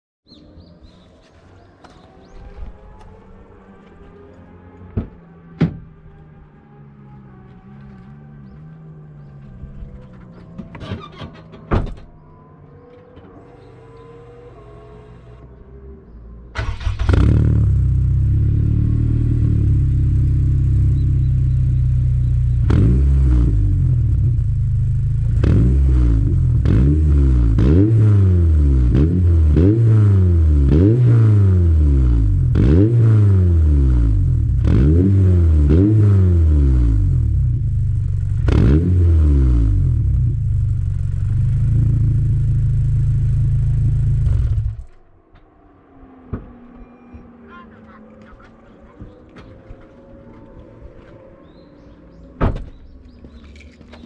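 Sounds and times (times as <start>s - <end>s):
loud car engine idling and revving: 1.8s - 54.0s.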